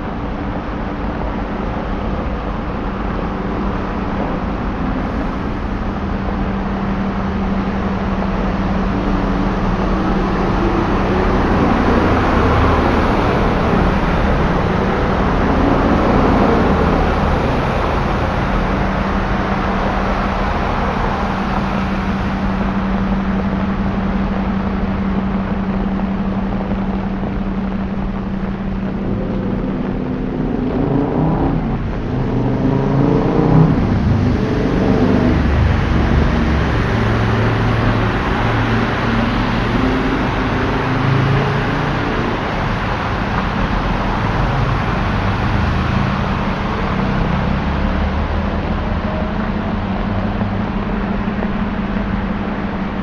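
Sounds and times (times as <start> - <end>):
engine hum: 0.0 - 53.0
vehicle accelerating past: 28.8 - 52.4.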